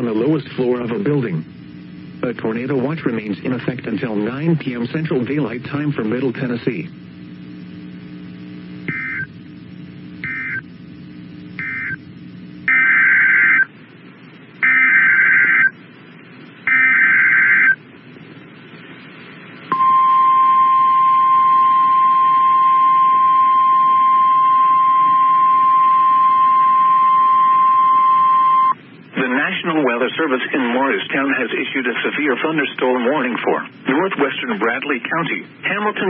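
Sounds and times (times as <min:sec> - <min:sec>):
steady attention tone: 0:00.0 - 0:28.9
data bursts: 0:08.8 - 0:13.7, 0:14.6 - 0:15.8, 0:16.6 - 0:17.8.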